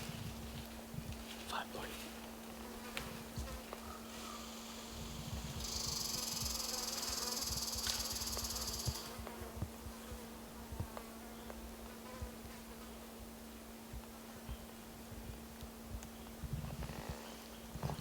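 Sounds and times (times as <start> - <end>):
insect buzzing trill: 4.5 - 9.3.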